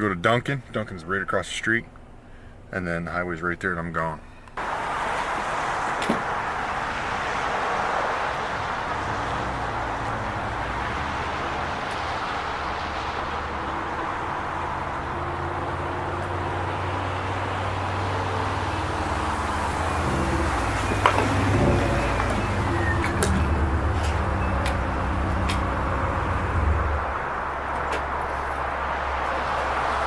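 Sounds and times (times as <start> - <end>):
road and tyre noise: 0.0 - 30.0
low engine hum: 4.2 - 30.0.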